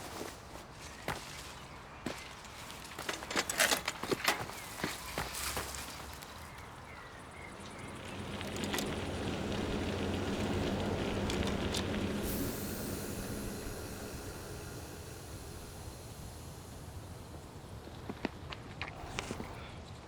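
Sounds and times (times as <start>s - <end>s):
vehicle passing by: 7.5s - 19.6s
hiss: 7.8s - 19.7s.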